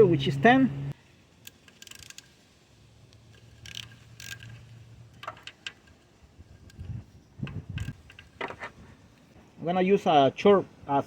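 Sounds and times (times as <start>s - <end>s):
metal tools clicking and scraping: 1.4s - 2.4s, 3.3s - 8.6s.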